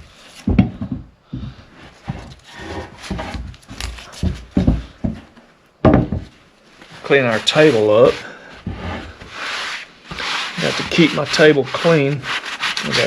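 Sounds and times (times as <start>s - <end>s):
wood and clamps knocking on bench: 5.8s - 6.3s.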